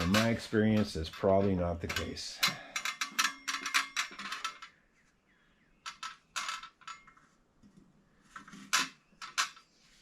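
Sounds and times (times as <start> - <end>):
metallic clicks from bicycle fenders: 0.0 - 4.8.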